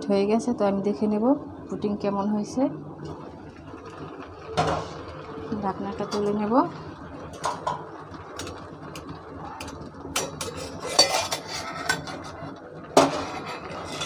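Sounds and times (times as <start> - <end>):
pot lid and cookware clinking: 10.2 - 12.2.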